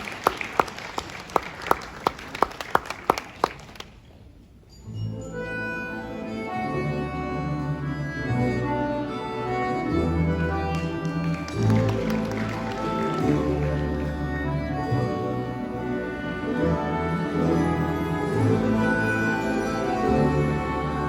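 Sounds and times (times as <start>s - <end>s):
audience clapping in unison: 0.0s - 4.1s, 10.6s - 14.2s
folk instrument orchestra playing: 4.8s - 21.0s.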